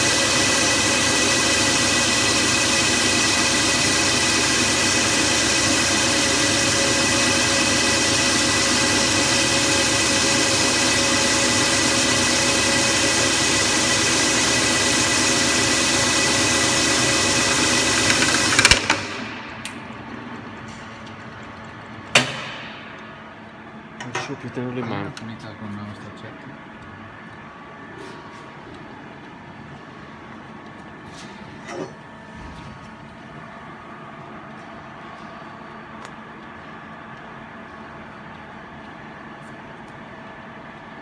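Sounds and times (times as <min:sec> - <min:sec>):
polishing machine whining: 0:00.0 - 0:19.3
machine clunks: 0:22.0 - 0:23.1.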